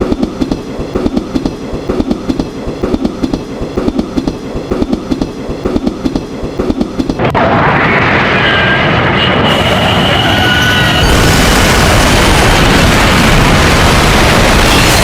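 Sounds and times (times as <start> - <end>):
train wheels clattering: 0.0 - 7.2.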